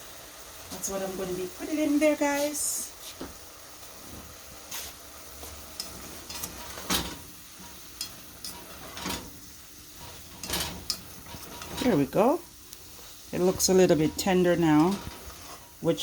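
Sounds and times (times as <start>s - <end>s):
vegetables sizzling in a pan: 0.0s - 16.0s
utensil scraping a pan: 4.7s - 16.0s.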